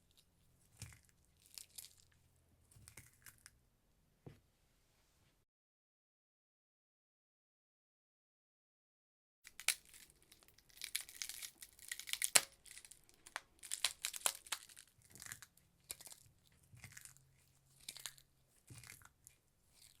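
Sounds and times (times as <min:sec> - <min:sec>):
ice cracking: 0:09.5 - 0:16.2, 0:17.8 - 0:19.2.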